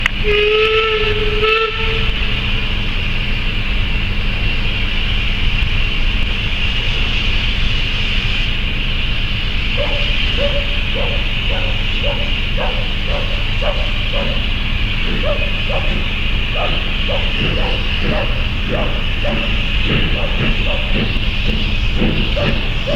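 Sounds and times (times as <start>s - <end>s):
locomotive whistle: 0.0s - 22.9s
train rumbling and hissing: 0.0s - 22.9s
dog yapping: 9.7s - 22.9s.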